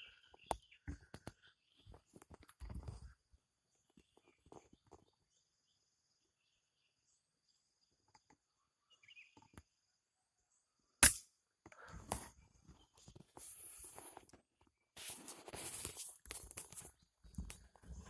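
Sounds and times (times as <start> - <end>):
sharp gunshot: 11.0 - 11.2
rustling and scraping movement: 13.0 - 18.0.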